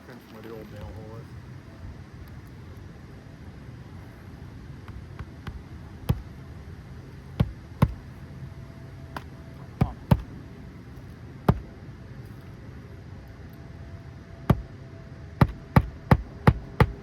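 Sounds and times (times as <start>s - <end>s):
hammer striking nail: 7.4s - 8.0s, 9.2s - 10.3s, 11.5s - 11.7s, 15.4s - 17.0s.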